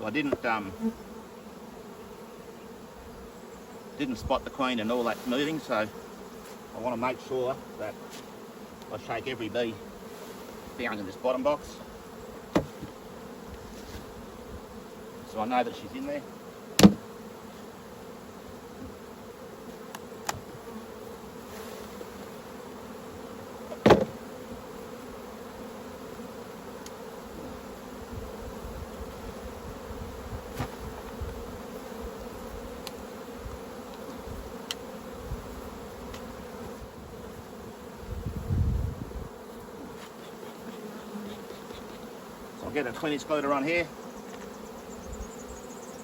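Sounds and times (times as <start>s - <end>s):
bees buzzing: 0.0s - 46.0s
sharp knock on hive: 0.2s - 0.6s, 12.5s - 13.0s, 16.8s - 17.2s, 23.7s - 24.3s, 30.5s - 31.4s.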